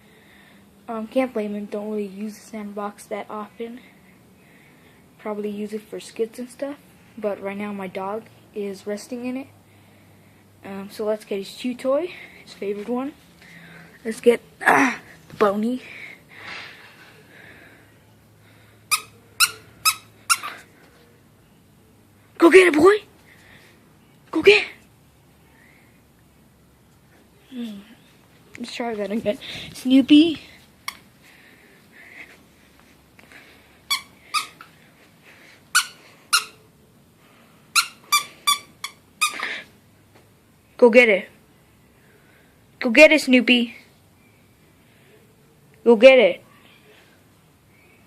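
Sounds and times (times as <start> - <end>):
squeaky dog chew toy squeezed: 18.9 - 20.7, 33.9 - 34.7, 35.7 - 36.6, 37.7 - 39.6.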